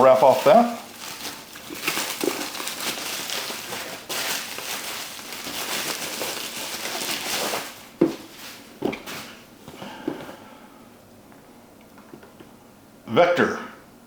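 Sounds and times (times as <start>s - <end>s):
bubble wrap crinkling: 0.0s - 9.6s.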